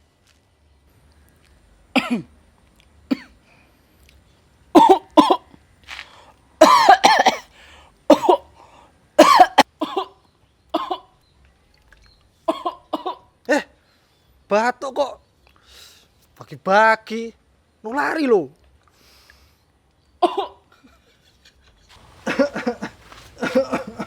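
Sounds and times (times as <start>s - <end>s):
person coughing: 2.0s - 2.3s, 4.8s - 5.5s, 6.6s - 7.5s, 8.1s - 8.5s, 9.2s - 10.1s, 10.8s - 11.0s, 12.5s - 13.7s, 20.2s - 20.6s, 22.3s - 24.0s.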